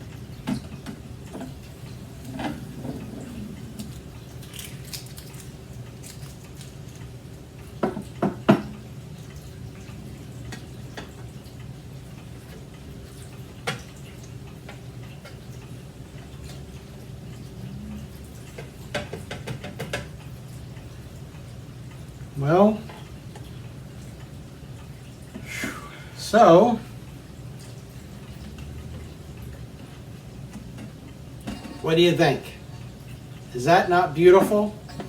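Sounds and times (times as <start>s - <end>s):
steady low hum: 0.0s - 7.9s.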